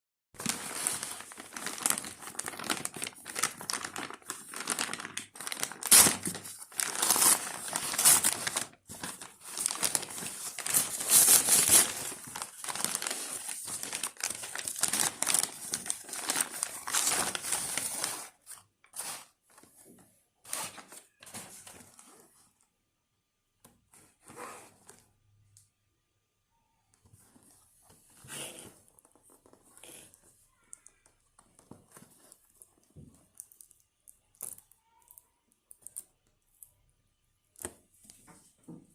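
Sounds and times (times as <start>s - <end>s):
packaging crinkling and rustling: 0.4s - 22.4s.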